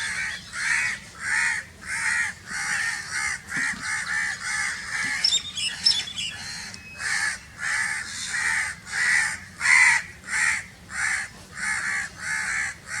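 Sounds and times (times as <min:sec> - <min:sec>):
crow cawing: 0:06.4 - 0:13.0.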